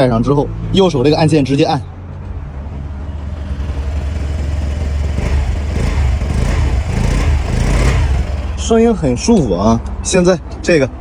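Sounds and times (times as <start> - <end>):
scooter engine idling: 2.9 - 9.5
electric starter: 3.1 - 9.1.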